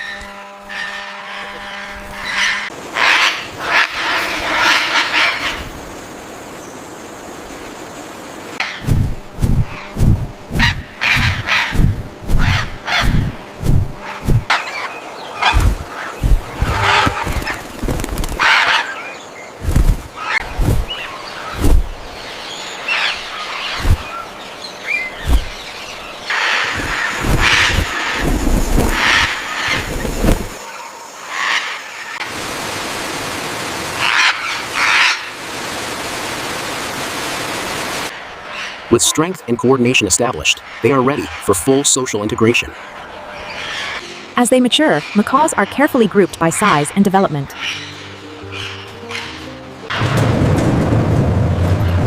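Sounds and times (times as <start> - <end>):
macaw squawks: 0.0 - 5.6, 10.6 - 11.8, 12.4 - 13.4, 26.3 - 28.2, 44.7 - 49.6
macaws squawking: 0.7 - 5.7, 9.7 - 19.2, 22.8 - 32.2, 34.0 - 35.4, 38.4 - 49.7
wings flapping thumps: 8.8 - 14.6, 15.4 - 18.7, 19.6 - 22.1, 23.7 - 24.2, 25.1 - 25.6, 26.6 - 30.6.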